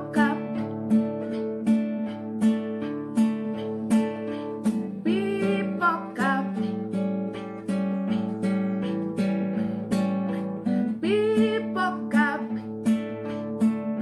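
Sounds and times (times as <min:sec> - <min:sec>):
woman singing: 0:00.0 - 0:01.2, 0:04.6 - 0:09.2, 0:10.6 - 0:13.4
acoustic guitar strumming: 0:00.0 - 0:14.0.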